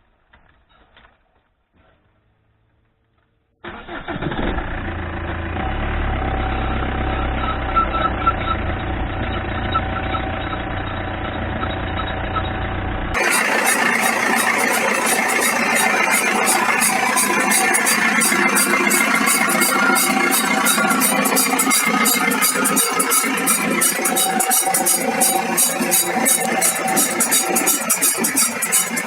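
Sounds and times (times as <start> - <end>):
car running noise: 4.2 - 29.0
diesel engine idling: 4.7 - 29.0
rhythmic squeaking: 13.2 - 29.0.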